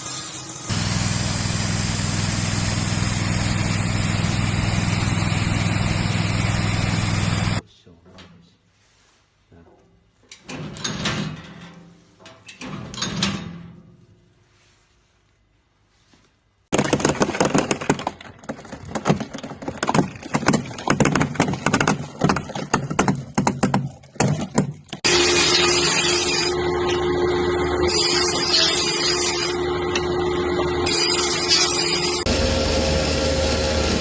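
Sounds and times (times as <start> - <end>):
machine humming with hiss: 0.5 - 7.6, 25.1 - 34.0
rapid irregular knocking: 16.7 - 25.0.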